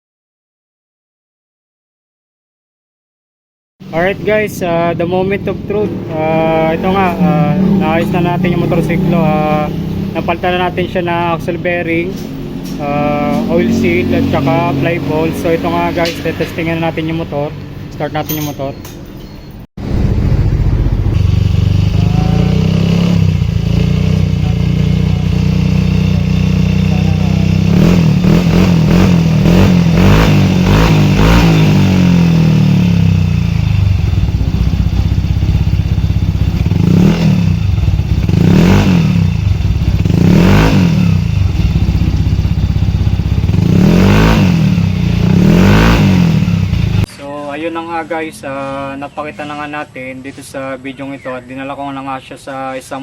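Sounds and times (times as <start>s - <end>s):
scooter engine idling and revving: 3.8s - 17.8s, 19.2s - 47.1s.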